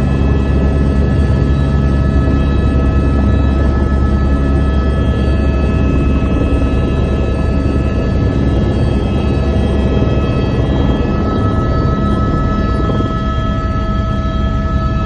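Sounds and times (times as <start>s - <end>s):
helicopter rotor drone: 0.0s - 15.0s
high turbine whine: 0.0s - 15.0s.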